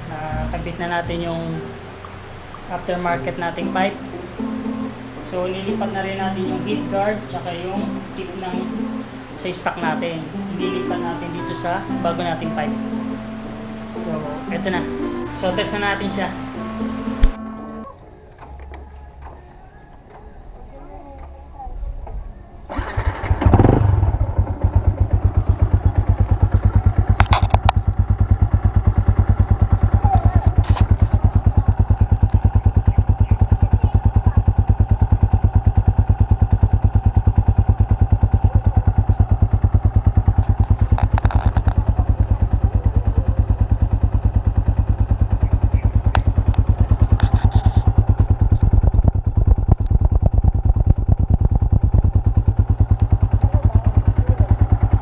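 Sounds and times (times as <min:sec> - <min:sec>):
motorcycle engine idling: 0:22.1 - 0:55.0.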